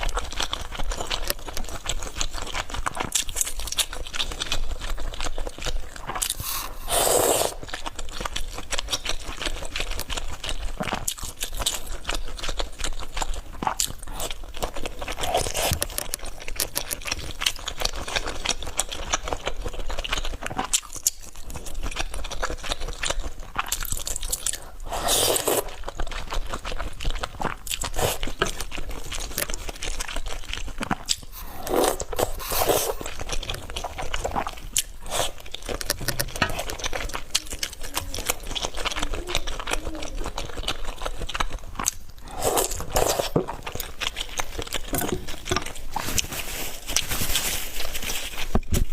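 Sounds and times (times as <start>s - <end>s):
person chewing food: 0.0s - 47.1s.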